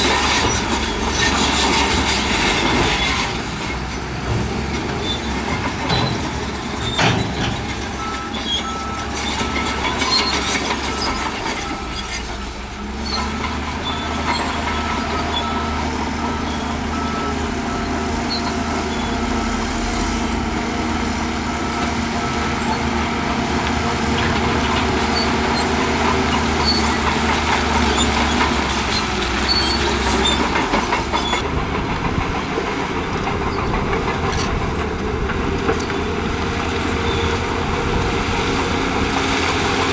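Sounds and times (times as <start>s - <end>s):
diesel engine drone: 0.0s - 39.9s
steel and rock clanking: 0.0s - 39.9s.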